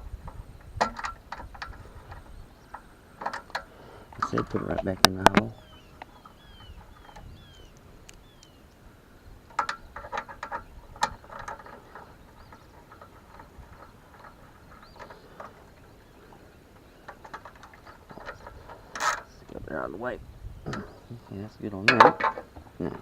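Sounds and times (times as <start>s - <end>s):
hand tools clicking and rattling: 9.5s - 19.4s.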